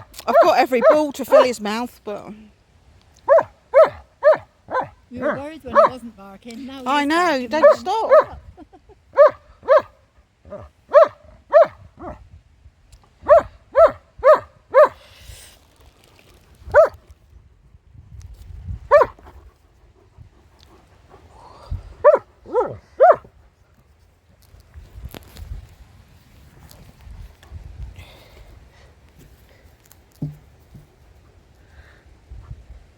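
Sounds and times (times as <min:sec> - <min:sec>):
dog barking: 0:00.0 - 0:01.6, 0:03.2 - 0:06.0, 0:07.6 - 0:08.4, 0:09.2 - 0:12.2, 0:13.2 - 0:15.0, 0:16.7 - 0:17.0, 0:18.9 - 0:19.2, 0:22.0 - 0:23.3.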